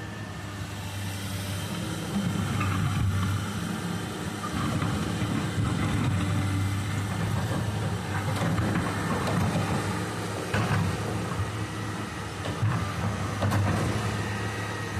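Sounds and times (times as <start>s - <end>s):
diesel engine running: 0.0s - 14.9s.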